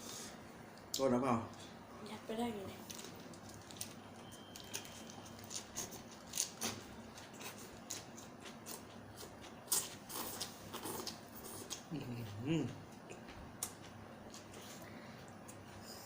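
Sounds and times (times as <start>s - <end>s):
faint chewing: 4.6s - 16.0s.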